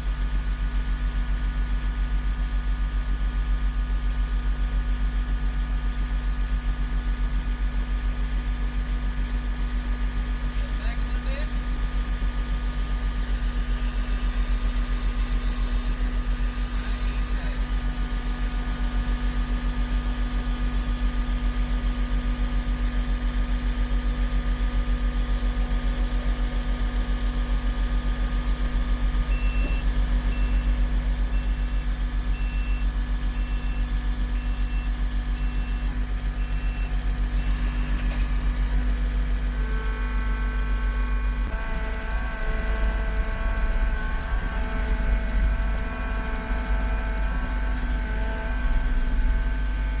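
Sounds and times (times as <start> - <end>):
backup alarm beeping: 29.2 - 36.9
heavy machinery engine rumbling: 41.4 - 50.0.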